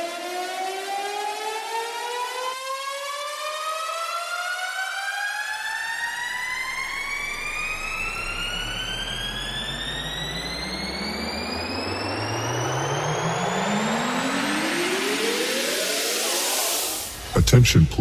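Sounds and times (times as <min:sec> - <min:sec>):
electronic rising tone: 0:06.3 - 0:17.4.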